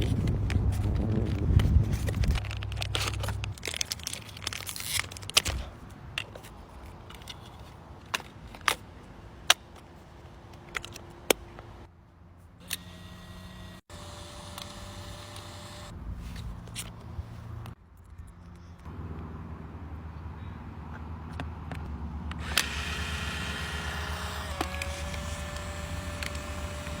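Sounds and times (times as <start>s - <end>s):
paper crinkling and tearing: 0.0s - 5.8s.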